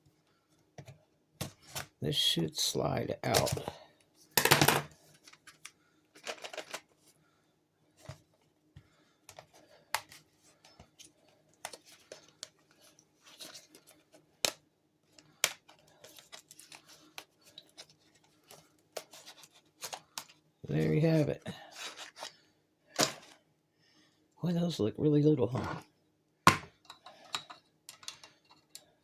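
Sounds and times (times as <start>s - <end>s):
clicks and scrapes of parts: 4.4s - 6.9s, 26.8s - 29.0s.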